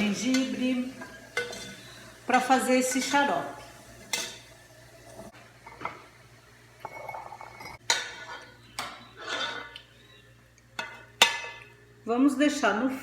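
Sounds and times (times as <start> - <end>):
metal utensil clinking on saucepan: 0.1 - 1.9, 4.1 - 4.5
utensil scraping saucepan: 6.8 - 9.8.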